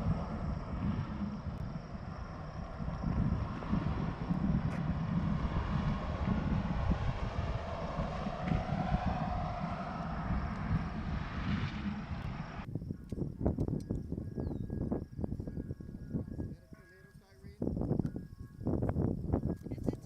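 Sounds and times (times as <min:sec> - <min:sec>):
engine drone: 0:00.0 - 0:12.7.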